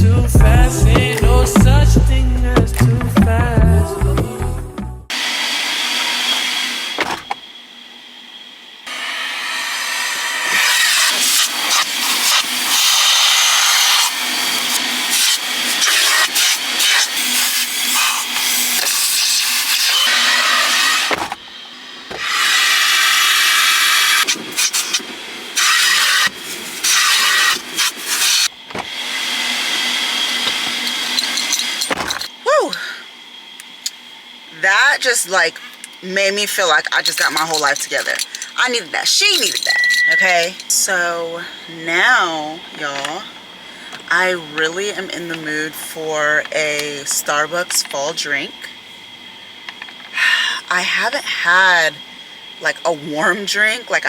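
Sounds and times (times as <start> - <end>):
car wash water spray: 8.9 - 21.4, 22.1 - 31.6.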